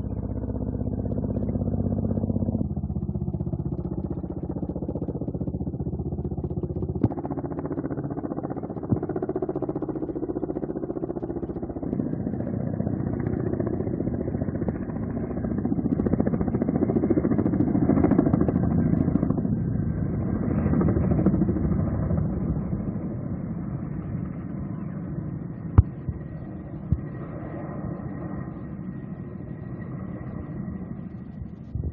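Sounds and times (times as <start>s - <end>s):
vehicle engine running: 0.0s - 19.6s, 25.5s - 27.2s.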